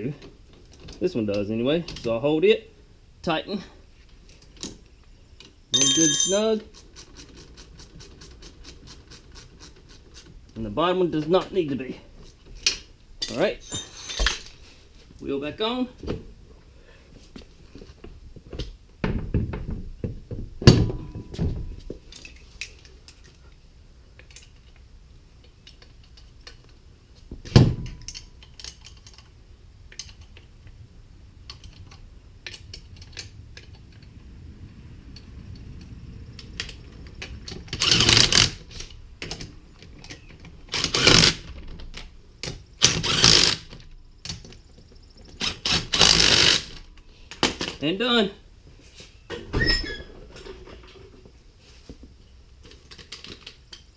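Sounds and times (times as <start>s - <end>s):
wheel clanking onto hub: 5.7s - 9.8s
ratchet wrench clicking: 37.8s - 38.6s, 45.4s - 46.7s.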